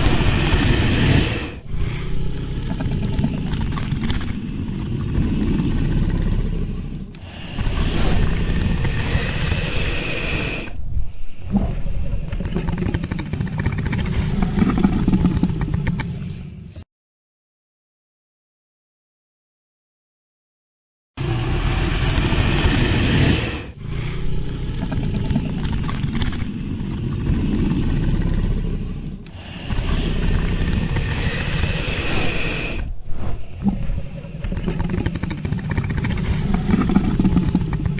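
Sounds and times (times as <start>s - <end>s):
dragon roaring growl: 0.0s - 15.8s, 21.2s - 37.9s.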